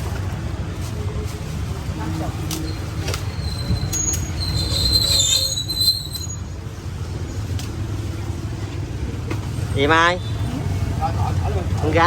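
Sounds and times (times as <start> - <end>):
low rumble of street traffic: 0.0 - 12.0
high thin squeal: 3.3 - 6.6.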